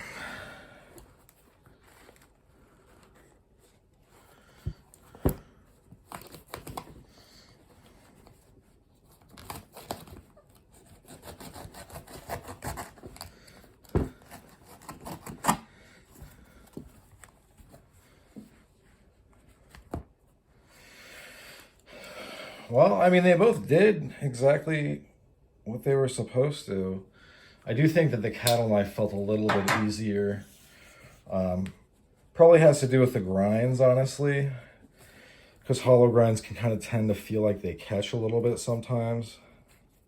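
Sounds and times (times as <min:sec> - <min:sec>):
knife sawing through shoe: 0:10.7 - 0:13.3, 0:14.1 - 0:15.6.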